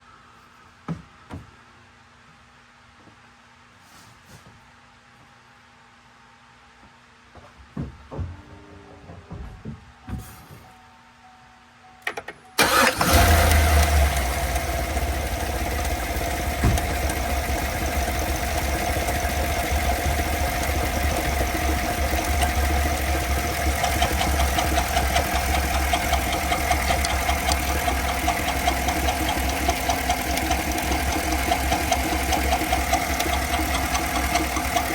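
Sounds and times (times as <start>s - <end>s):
car engine starting and idling: 12.6s - 34.9s
engine ticking: 12.6s - 34.9s.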